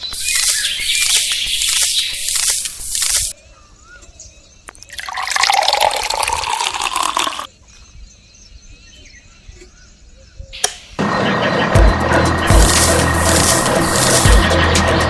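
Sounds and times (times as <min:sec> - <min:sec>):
faint bird chirps: 0:00.0 - 0:05.0
water pouring: 0:05.0 - 0:07.5.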